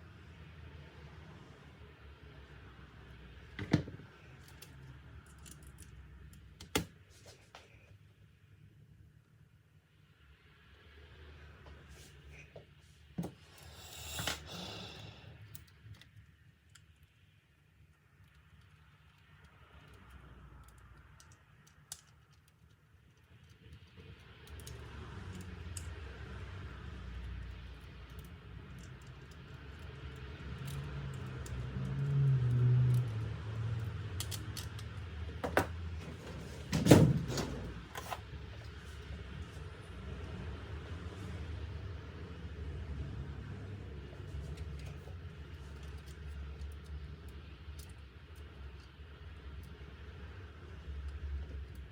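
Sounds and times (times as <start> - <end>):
laptop clicks and handling: 6.6 - 7.0.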